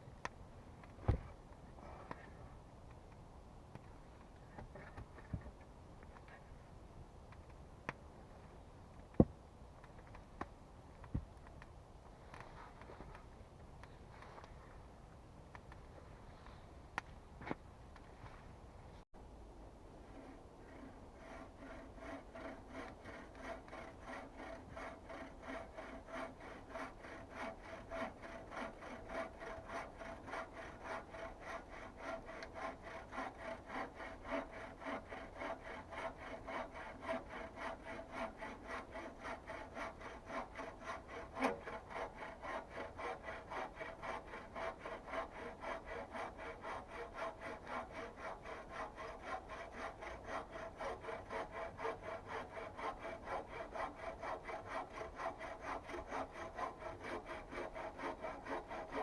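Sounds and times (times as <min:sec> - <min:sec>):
hand saw cutting wood: 0:20.0 - 0:59.0.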